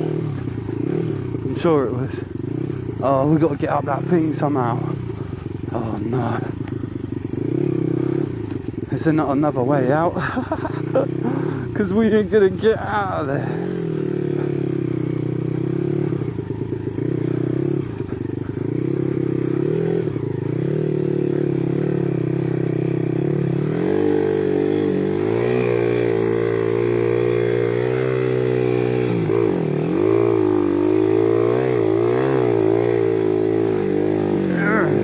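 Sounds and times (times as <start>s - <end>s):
motorcycle engine revving: 0.0s - 35.0s.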